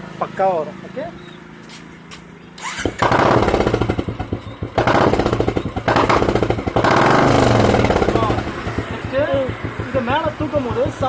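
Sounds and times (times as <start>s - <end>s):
motorcycle engine revving: 2.5s - 11.0s.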